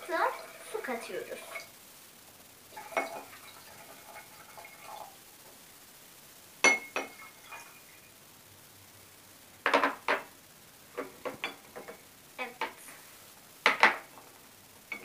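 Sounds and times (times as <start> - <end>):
glass jar and glass clinking: 6.6 - 7.7.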